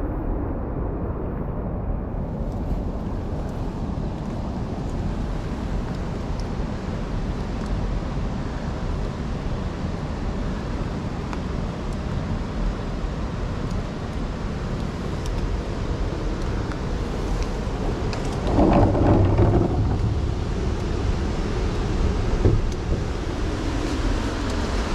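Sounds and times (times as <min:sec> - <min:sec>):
wind buffeting microphone: 0:00.0 - 0:08.4, 0:14.2 - 0:24.9.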